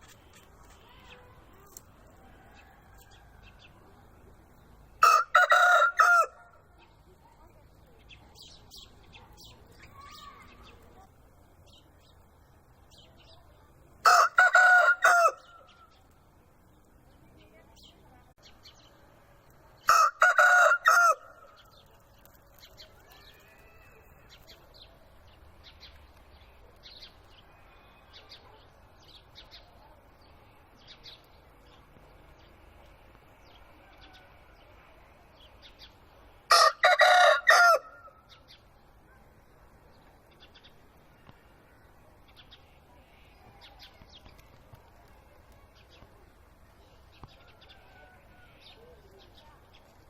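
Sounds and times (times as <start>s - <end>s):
rooster crowing: 5.0s - 6.5s, 14.0s - 15.5s, 19.9s - 21.4s, 36.5s - 38.1s, 47.5s - 48.7s
small birds chirping: 6.7s - 14.0s, 15.4s - 19.9s, 21.3s - 36.4s, 38.1s - 50.0s.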